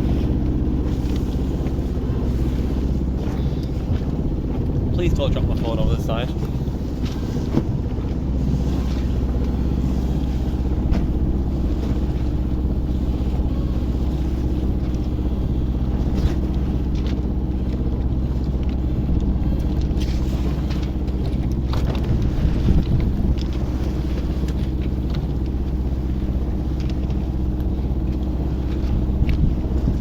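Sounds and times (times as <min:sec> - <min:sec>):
wind on microphone: 0:00.0 - 0:16.7, 0:21.8 - 0:24.4, 0:28.6 - 0:30.0
steady low drone: 0:00.0 - 0:30.0.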